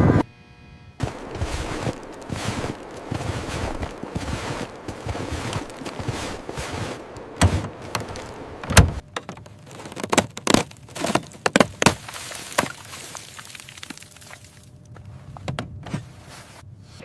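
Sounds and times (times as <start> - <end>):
sharp knocks and clunks: 7.3 - 12.0.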